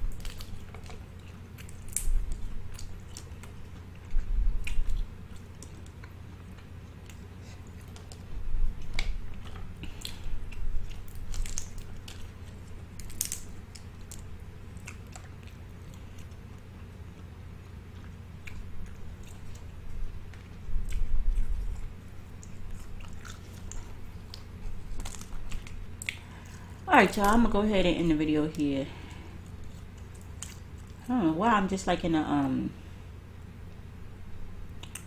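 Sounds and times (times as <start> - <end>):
person chewing food: 0.0 - 27.3, 28.9 - 31.1, 34.7 - 35.0.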